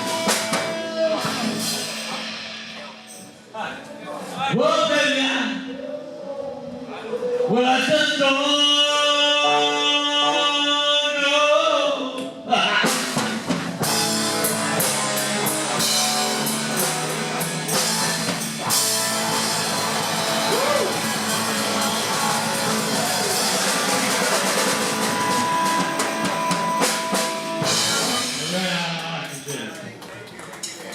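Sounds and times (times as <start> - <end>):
electric guitar: 0.0 - 3.3, 12.6 - 29.4
drum kit with cymbals: 0.0 - 4.4, 12.7 - 30.0.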